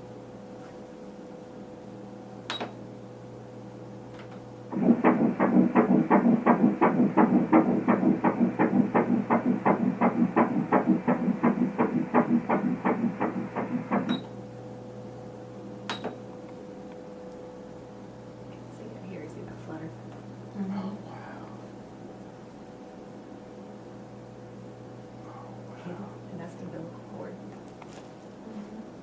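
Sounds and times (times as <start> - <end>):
faint machine hum: 0.0 - 29.0
rapid heartbeat pulsing: 4.7 - 14.2.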